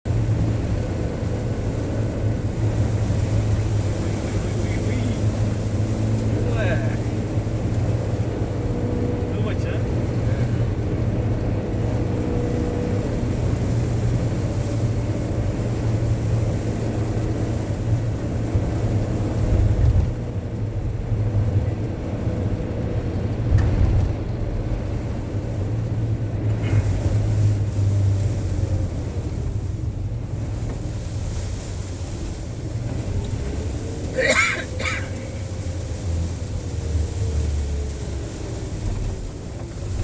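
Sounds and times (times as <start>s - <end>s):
strong wind buffeting microphone: 17.8s - 31.2s.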